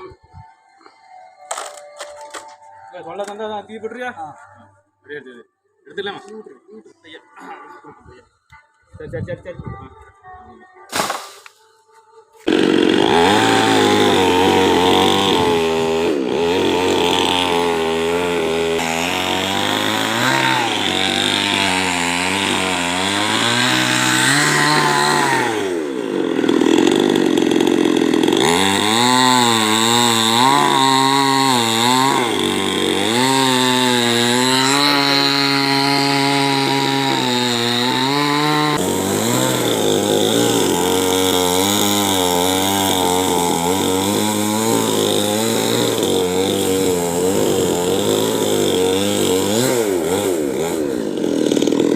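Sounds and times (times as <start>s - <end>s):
chainsaw cutting wood: 1.5s - 2.6s, 10.9s - 11.6s, 12.4s - 51.9s.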